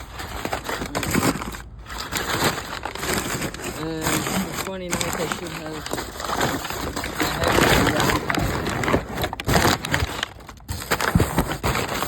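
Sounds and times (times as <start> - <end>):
packaging rustling: 0.0 - 12.0.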